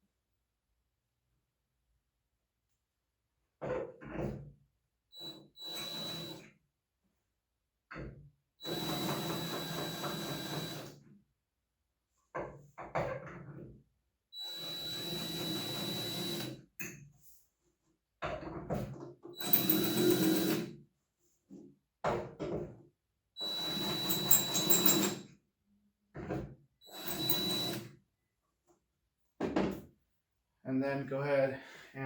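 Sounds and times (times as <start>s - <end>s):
power drill running: 5.2s - 6.4s, 8.6s - 10.9s, 14.4s - 16.6s, 19.4s - 20.7s, 23.4s - 25.2s, 26.9s - 27.9s.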